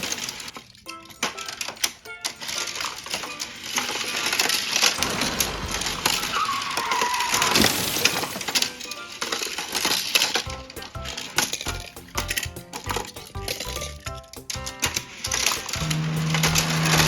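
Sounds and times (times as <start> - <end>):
toy cars clattering together: 0.0 - 17.0
background music: 0.8 - 7.0, 7.6 - 17.0
short squealing tone: 5.0 - 7.8.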